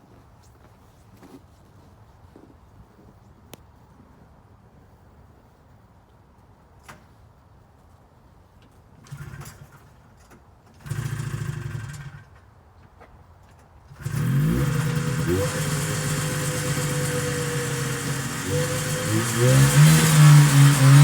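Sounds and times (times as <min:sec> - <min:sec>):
snowmobile engine starting and idling: 0:09.0 - 0:12.4, 0:13.5 - 0:21.0.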